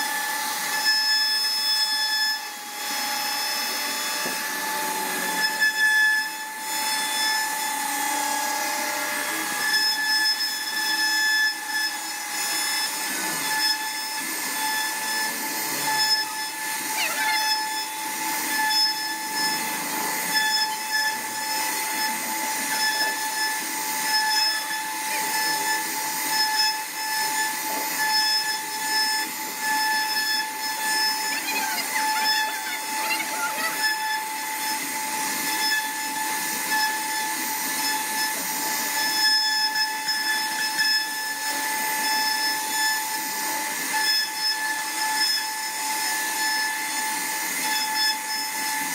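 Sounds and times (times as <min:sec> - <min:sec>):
rasping hiss of wood cutting: 0:00.0 - 0:48.9
router spindle whining: 0:00.0 - 0:48.9.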